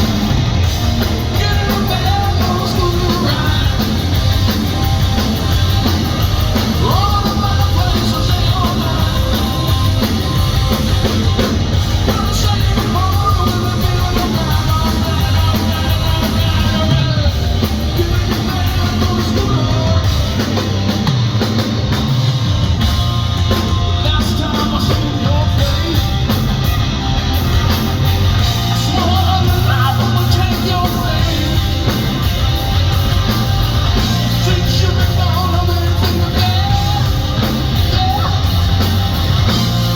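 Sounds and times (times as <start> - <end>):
hard rock band playing: 0.0 - 39.9
man singing: 1.2 - 4.4, 6.6 - 10.4, 11.9 - 20.7, 23.7 - 26.4, 28.6 - 32.1, 34.2 - 38.8.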